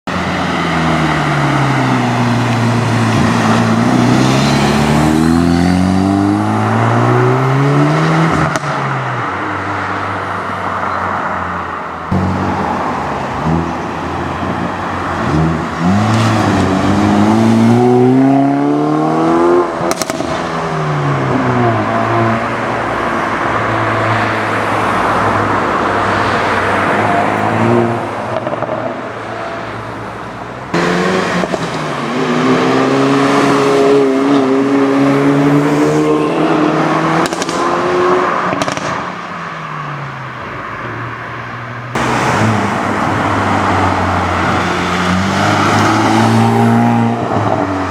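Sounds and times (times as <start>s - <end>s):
car engine accelerating hard: 0.1s - 11.3s, 12.0s - 47.9s
sharp exhaust pop: 38.5s - 39.2s.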